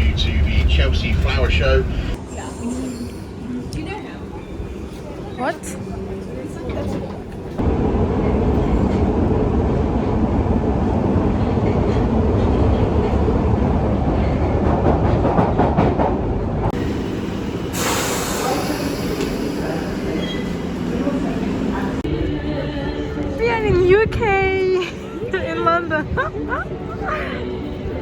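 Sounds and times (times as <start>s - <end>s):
hissing rush: 16.8s - 22.0s.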